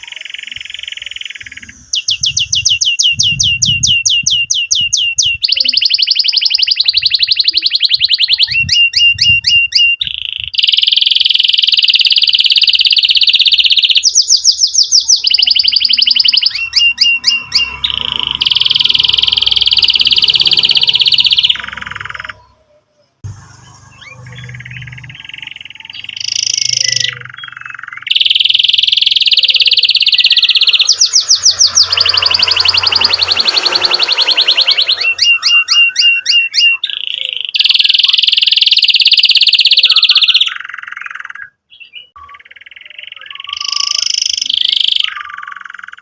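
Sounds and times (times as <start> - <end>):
canary singing trills: 0.0 - 46.0.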